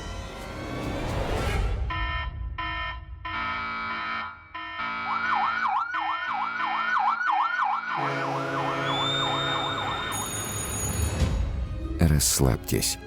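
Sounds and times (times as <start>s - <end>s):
siren yelping: 1.9s - 10.6s.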